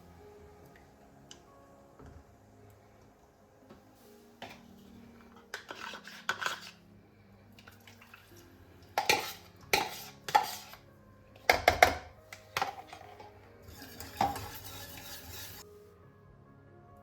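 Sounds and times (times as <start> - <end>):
dishes and utensils clinking: 4.4 - 6.8, 7.6 - 10.8, 11.4 - 15.6.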